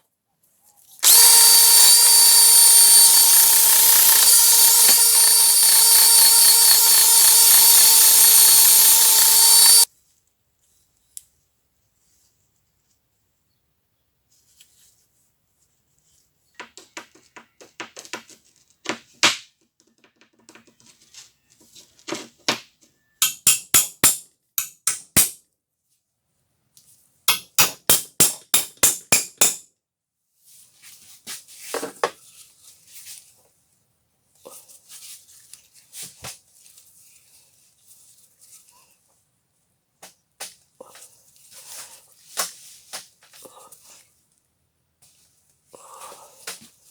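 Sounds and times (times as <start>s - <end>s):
tool clicks: 1.0s - 9.9s, 23.2s - 25.4s
rapid sharp metal strikes: 23.2s - 25.4s.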